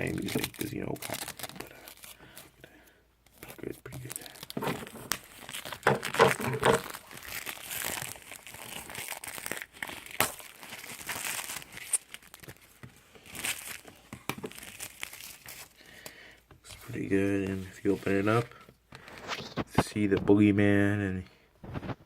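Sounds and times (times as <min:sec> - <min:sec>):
packaging crinkling and tearing: 0:00.0 - 0:02.5, 0:03.3 - 0:16.1.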